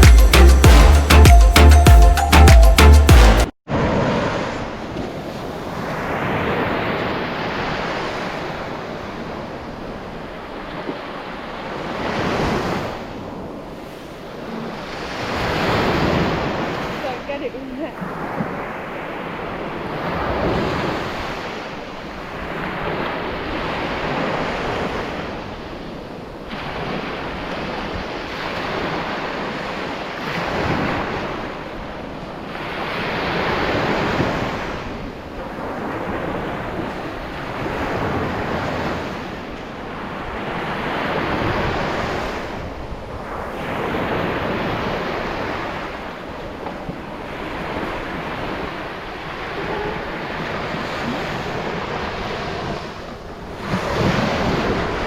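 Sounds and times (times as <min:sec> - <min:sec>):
sea waves breaking on beach: 0:03.7 - 0:55.0
wind buffeting microphone: 0:22.4 - 0:55.0.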